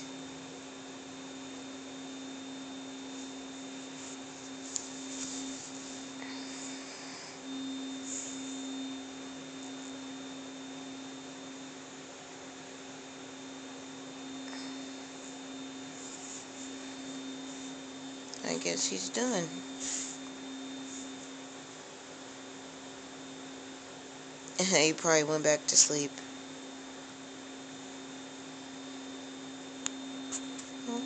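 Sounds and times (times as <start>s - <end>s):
faint high whine: 0.0s - 31.0s
low electrical hum: 0.0s - 31.0s
soft rustles: 3.2s - 6.2s.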